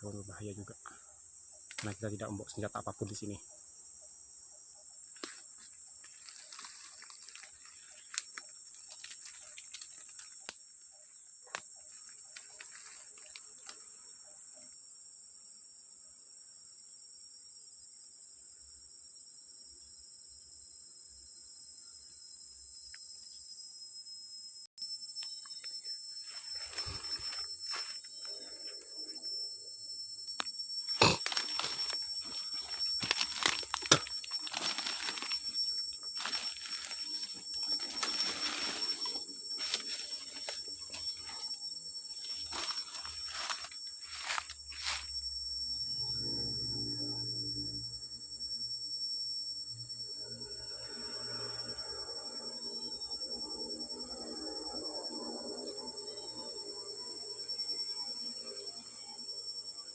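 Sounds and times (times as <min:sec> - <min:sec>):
insects buzzing: 0:00.0 - 0:59.9
footsteps crunching through leaves: 0:05.2 - 0:10.3, 0:26.4 - 0:28.0, 0:31.0 - 0:41.4, 0:42.2 - 0:45.1
sharp snaps and crackles: 0:06.1 - 0:10.6, 0:30.4 - 0:41.3.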